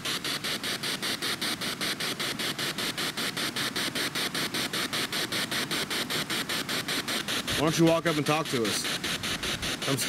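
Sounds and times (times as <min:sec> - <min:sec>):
stuttering radio static: 0:05.2 - 0:10.0.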